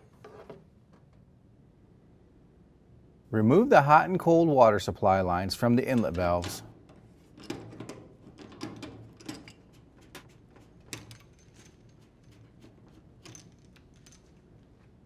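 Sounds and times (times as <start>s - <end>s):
hoses clicking and knocking: 5.8s - 15.0s.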